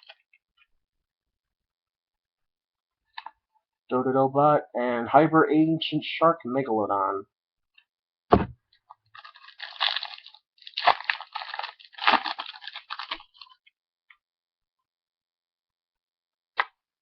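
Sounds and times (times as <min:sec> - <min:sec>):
foil wrapper crinkling: 0:09.1 - 0:13.6.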